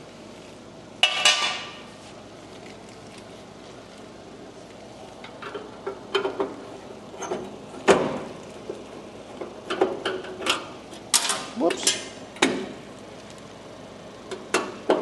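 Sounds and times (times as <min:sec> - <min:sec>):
metal clanks of tools and parts: 0:09.7 - 0:12.7.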